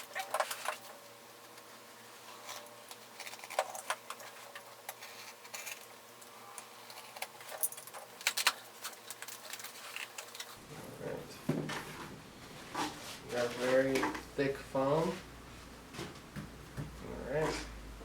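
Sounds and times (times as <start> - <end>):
packaging crinkling and rustling: 6.9 - 10.6.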